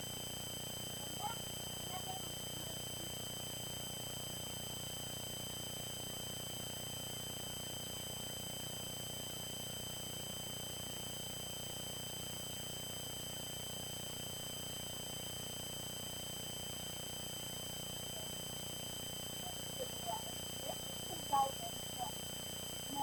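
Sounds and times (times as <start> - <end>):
low electronic hum: 10.2 - 23.0.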